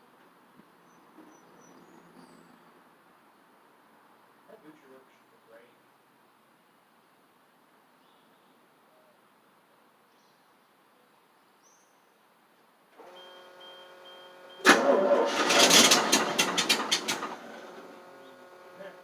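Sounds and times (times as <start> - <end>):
engine cranking by starter: 13.0 - 19.0
faint beep: 13.1 - 14.7.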